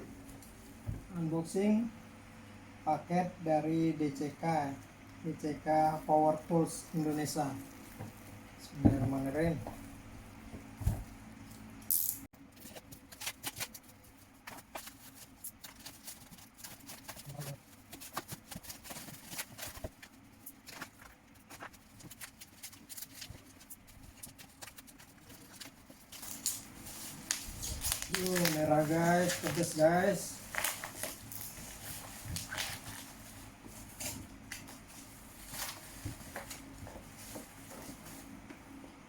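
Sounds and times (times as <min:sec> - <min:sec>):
packaging scrape: 0:20.9 - 0:29.8
parcel packaging snips and rustles: 0:27.2 - 0:29.8.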